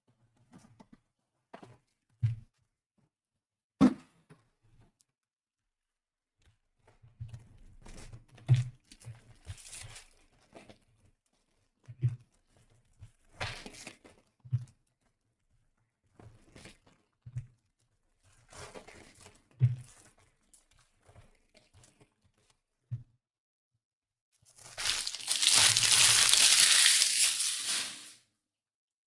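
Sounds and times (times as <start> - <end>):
wrapper crinkling: 24.5 - 28.2
card pack wrappers rustling: 24.6 - 28.2.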